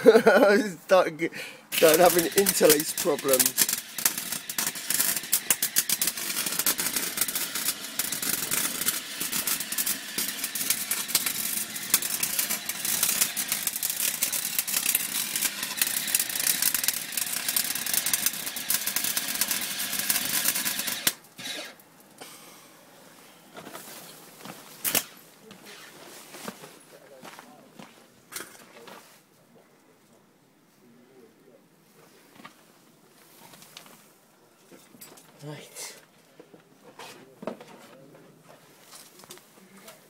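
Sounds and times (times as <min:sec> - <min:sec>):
welding arc crackling: 0:01.7 - 0:21.8, 0:24.8 - 0:25.2.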